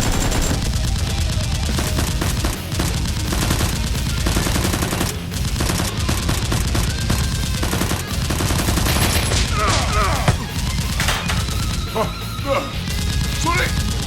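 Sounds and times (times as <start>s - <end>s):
rapid machine gun fire: 0.0s - 12.0s, 12.9s - 14.0s.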